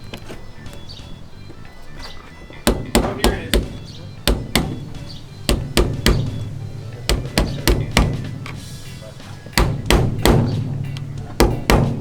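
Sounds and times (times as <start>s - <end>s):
hammer striking sheet metal: 2.7s - 4.9s, 5.5s - 6.4s, 7.1s - 12.0s.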